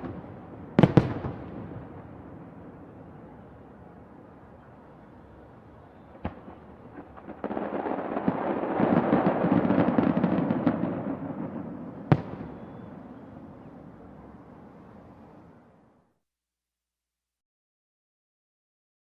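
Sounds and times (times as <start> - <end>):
fireworks crackling and banging: 0.0 - 3.3, 5.8 - 14.6.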